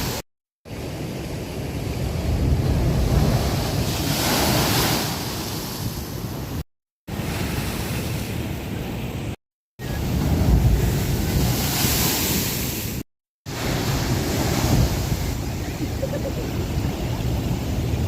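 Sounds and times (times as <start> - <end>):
ocean surf breaking: 0.0 - 8.6, 9.8 - 18.0
wind buffeting microphone: 13.5 - 18.0.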